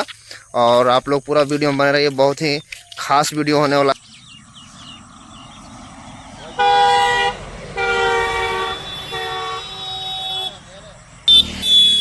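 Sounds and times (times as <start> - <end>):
vehicle horn blasts: 6.4 - 12.0.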